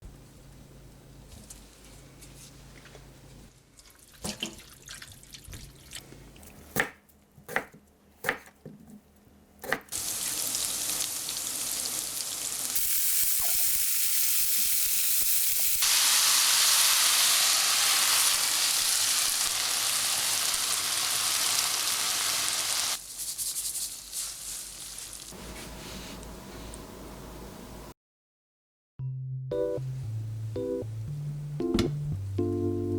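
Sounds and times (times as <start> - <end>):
food sizzling in a pan: 9.9 - 25.4.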